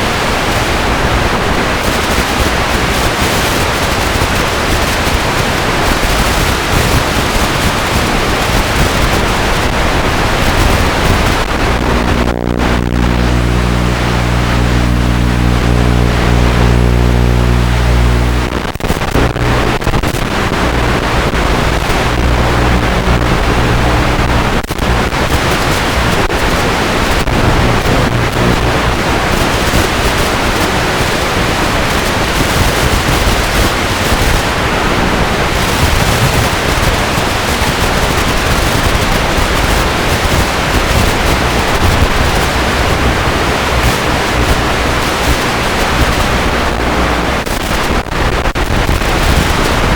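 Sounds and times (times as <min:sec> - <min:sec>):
loud steady rushing noise: 0:00.0 - 0:49.9
low buzzing hum: 0:05.7 - 0:33.8, 0:42.8 - 0:48.3.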